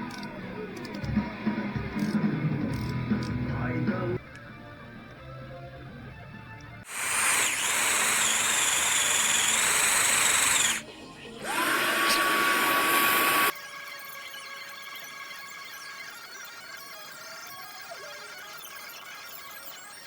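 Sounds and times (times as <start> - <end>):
quiet background music: 0.0 - 6.9
electric drill whining: 6.9 - 13.5.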